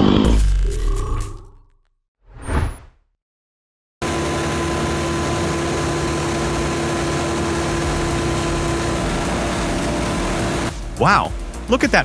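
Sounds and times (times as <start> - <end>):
heavy machine engine humming: 4.0 - 10.7.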